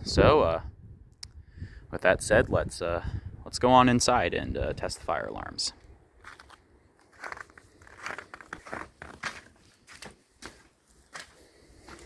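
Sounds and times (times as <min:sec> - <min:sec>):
scuffing footsteps: 0:06.2 - 0:12.0.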